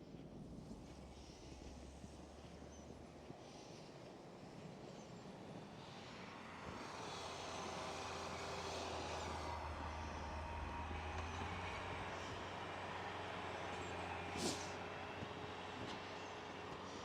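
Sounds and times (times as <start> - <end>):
tractor engine droning: 5.9 - 17.0.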